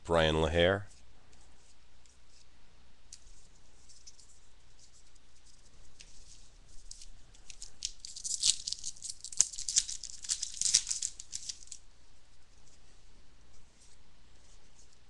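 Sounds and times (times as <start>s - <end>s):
foil wrapper crinkling: 6.0s - 11.8s.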